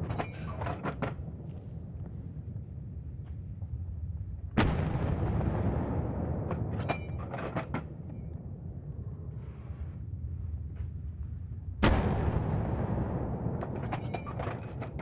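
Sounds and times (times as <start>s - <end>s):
rifle shot: 11.8s - 15.0s.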